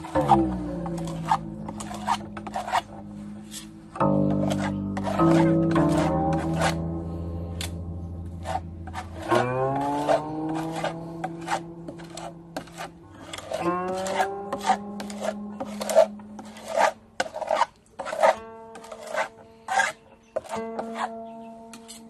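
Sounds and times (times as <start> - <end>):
rasping hand sanding strokes: 0.0 - 3.7, 4.3 - 6.8, 8.4 - 21.2
plucked string music: 0.0 - 22.0.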